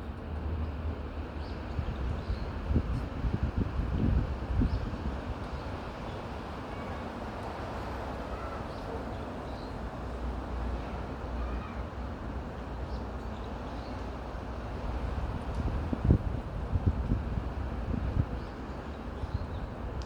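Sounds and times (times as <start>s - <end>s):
wind buffeting microphone: 1.8s - 5.8s, 14.9s - 20.0s
wind rushing through trees: 1.8s - 11.8s, 13.7s - 20.0s.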